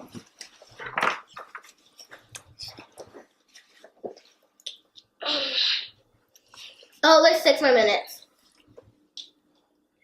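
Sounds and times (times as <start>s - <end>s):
people chewing: 0.0s - 5.2s, 6.3s - 7.0s.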